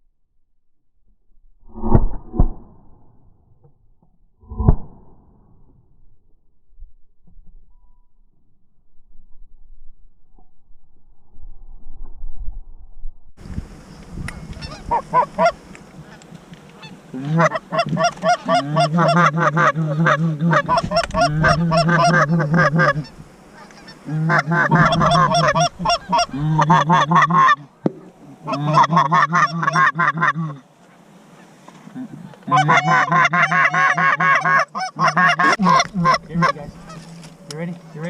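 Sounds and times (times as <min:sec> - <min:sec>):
goose honking and clucking: 0:14.4 - 0:38.0.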